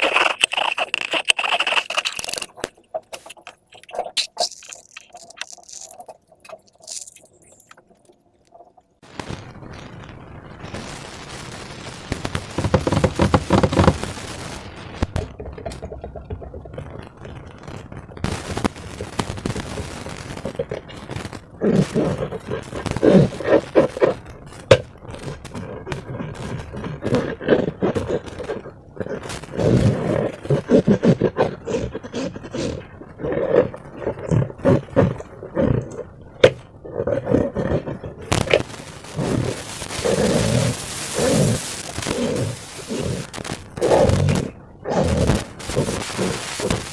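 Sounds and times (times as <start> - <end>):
rasping burst: 0.0 - 7.8, 10.7 - 15.4, 38.3 - 46.9
slime crackling pops: 0.0 - 7.8, 38.3 - 46.9
slime squelching: 0.0 - 8.9, 21.8 - 46.9.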